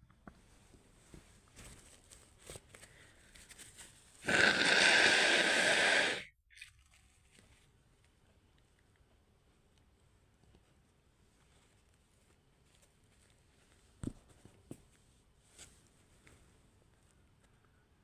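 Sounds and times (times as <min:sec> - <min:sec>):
faint rustles: 0:00.4 - 0:04.2
breath rushing through nose: 0:04.2 - 0:06.3.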